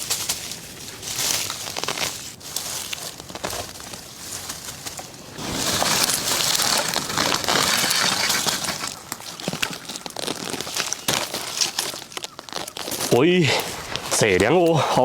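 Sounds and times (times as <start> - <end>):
twigs snapping: 0.0 - 14.5
dry leaves crackling and rustling: 0.0 - 14.8.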